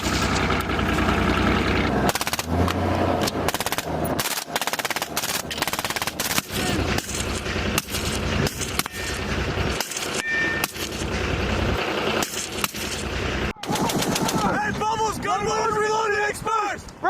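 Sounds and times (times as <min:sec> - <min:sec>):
heavy machine guns firing: 0:02.0 - 0:02.7, 0:03.4 - 0:11.0, 0:12.2 - 0:14.7.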